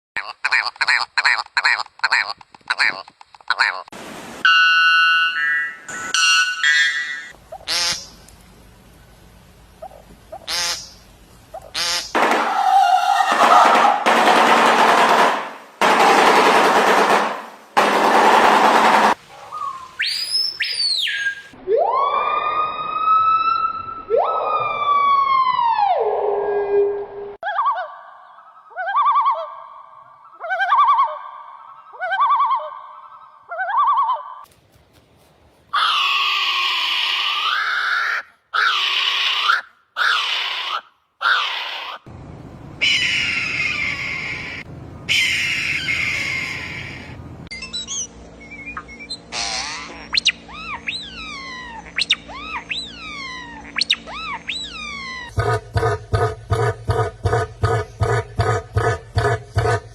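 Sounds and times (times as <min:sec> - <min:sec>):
bird warbling trill call: 0:19.5 - 0:21.6, 0:47.5 - 0:55.4.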